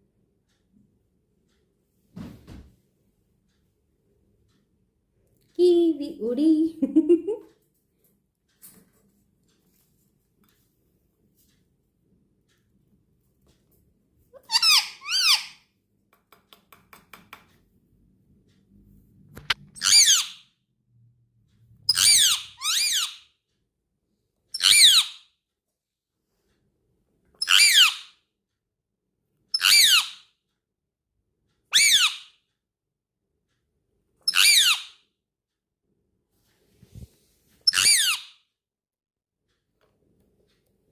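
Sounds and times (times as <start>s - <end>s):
parrot calling: 14.4s - 15.6s, 19.8s - 20.4s, 21.9s - 23.3s, 24.6s - 25.2s, 27.4s - 28.2s, 29.6s - 30.2s, 31.7s - 32.3s, 34.3s - 35.0s, 37.7s - 38.4s.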